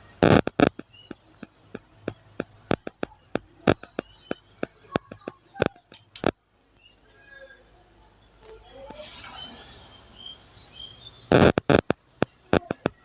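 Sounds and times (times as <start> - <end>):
small tools clicking and tapping: 0.2 - 6.4.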